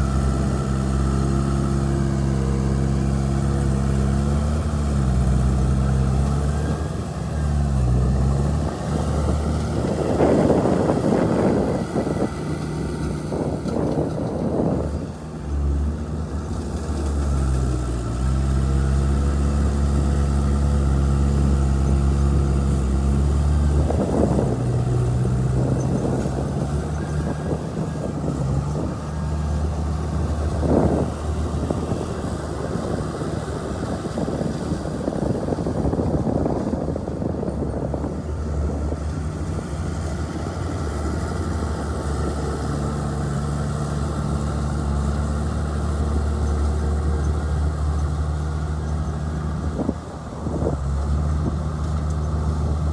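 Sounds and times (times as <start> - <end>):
heavy diesel engine running: 0.0 - 52.9.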